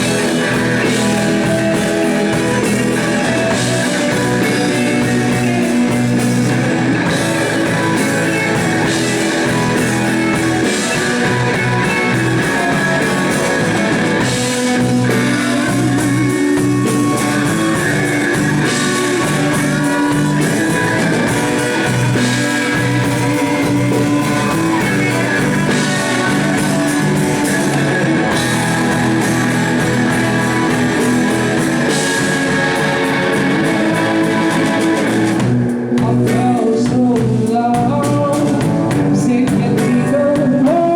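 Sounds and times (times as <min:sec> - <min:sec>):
guitar riffing: 0:00.0 - 0:36.8
rock band playing: 0:00.0 - 0:40.9.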